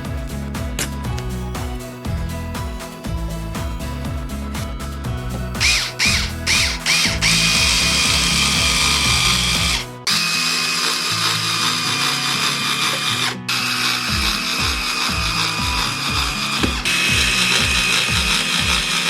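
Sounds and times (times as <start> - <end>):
background music: 0.0 - 19.0
power drill driving screws: 5.6 - 19.0.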